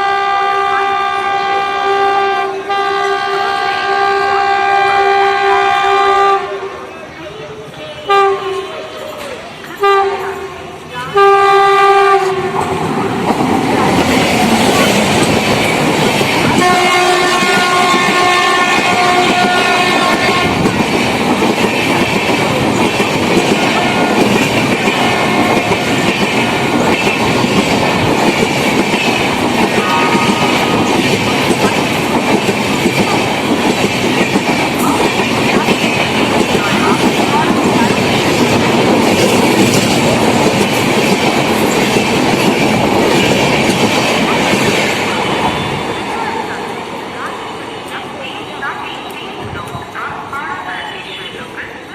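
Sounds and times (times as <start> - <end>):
train air horn blowing: 0.0 - 6.8, 7.9 - 9.1, 9.8 - 12.7, 16.6 - 20.7, 29.8 - 30.9
train wheels clattering over rails: 12.2 - 46.5.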